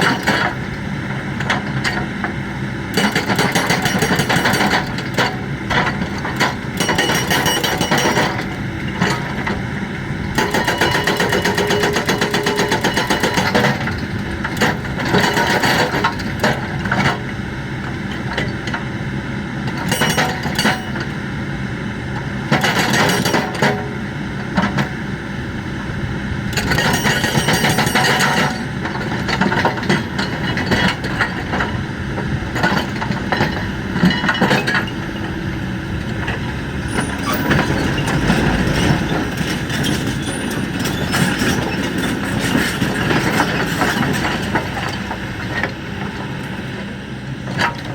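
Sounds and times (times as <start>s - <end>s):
excavator diesel engine running: 0.0s - 47.9s
hydraulic breaker hammering: 10.3s - 17.3s, 26.4s - 35.2s.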